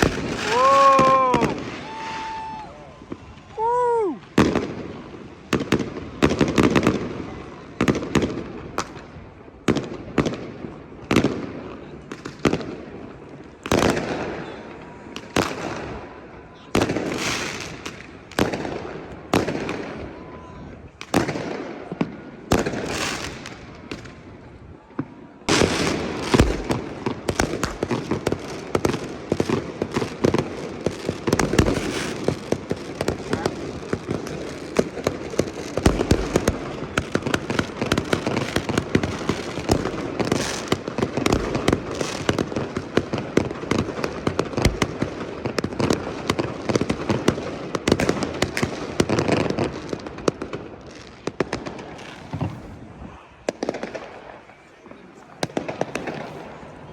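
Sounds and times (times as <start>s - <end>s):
deep fireworks booms: 0.0s - 56.9s
fireworks crackling and popping: 0.0s - 56.9s.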